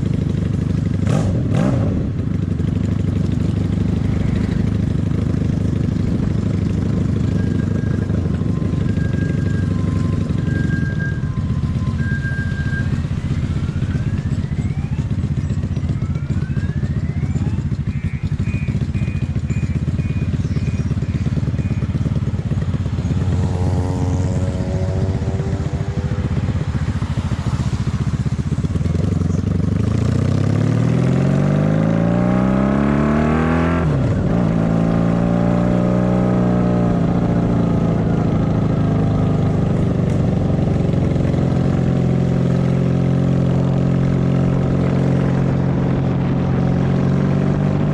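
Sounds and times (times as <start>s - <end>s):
motorcycle engine accelerating: 0.0s - 47.9s.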